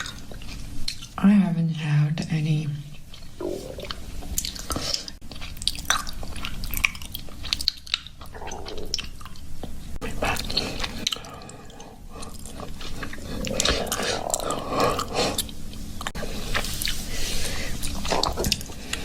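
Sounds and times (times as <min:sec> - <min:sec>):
stomach growling: 0:03.0 - 0:16.8, 0:17.8 - 0:19.0.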